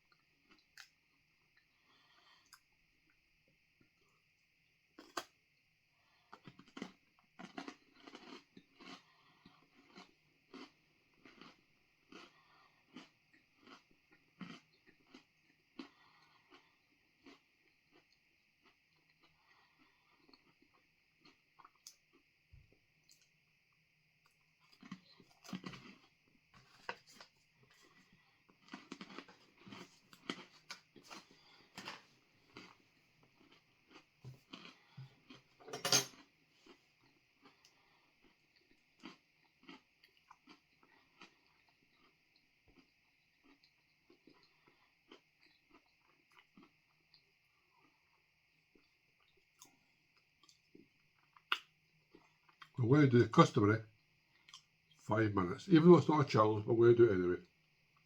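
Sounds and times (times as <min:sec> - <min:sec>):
crunchy chewing: 0:06.1 - 0:22.3, 0:24.2 - 0:52.8.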